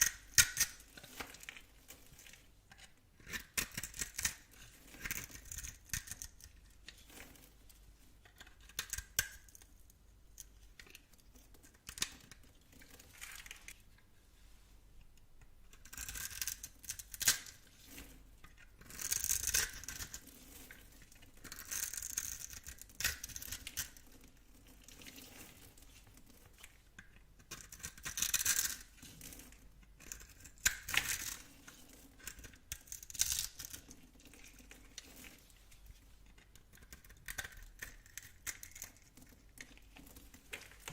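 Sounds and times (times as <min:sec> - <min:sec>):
blade scraping through soap: 0:27.4 - 0:35.4.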